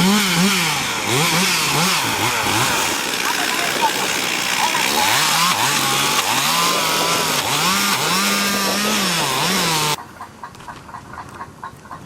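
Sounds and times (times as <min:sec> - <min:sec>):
chainsaw running and revving: 0:00.0 - 0:10.0.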